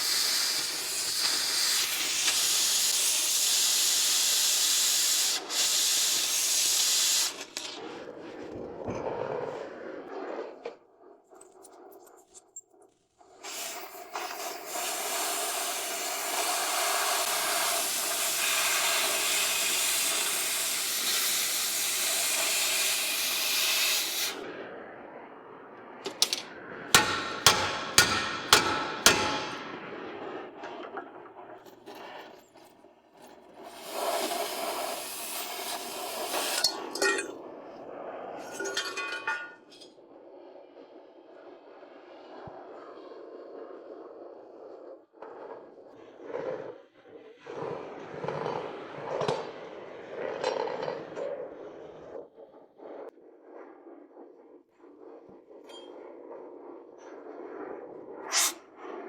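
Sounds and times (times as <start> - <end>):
steady hiss: 0.0 - 7.9, 13.4 - 24.5, 33.5 - 37.0
sharp hammer strikes: 27.0 - 29.8.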